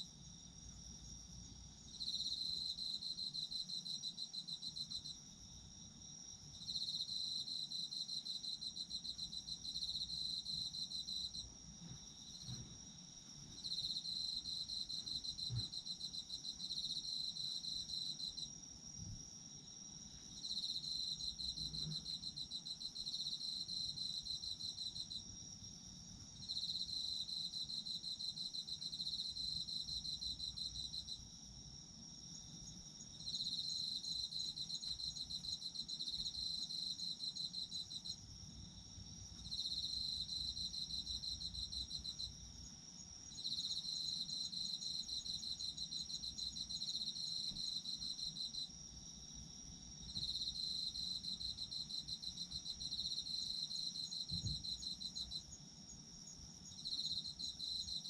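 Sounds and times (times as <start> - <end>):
cricket pulsed trill: 0.0 - 58.0
cricket steady high trill: 19.8 - 58.0.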